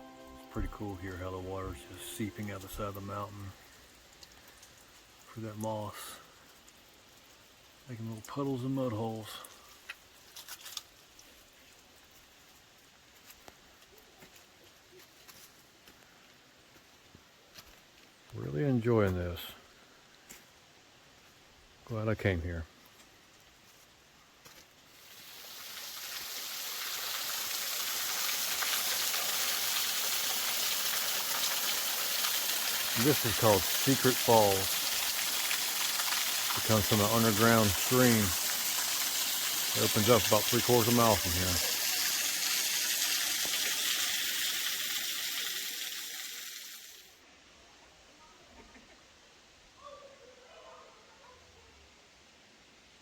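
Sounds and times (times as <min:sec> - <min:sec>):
small waterfall splashing: 0:24.9 - 0:47.2.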